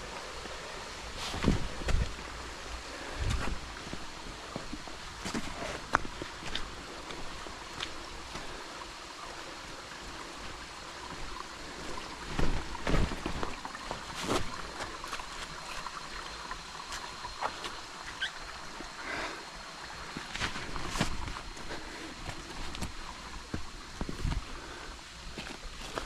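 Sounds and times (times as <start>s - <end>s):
creek trickling: 0.0s - 26.0s.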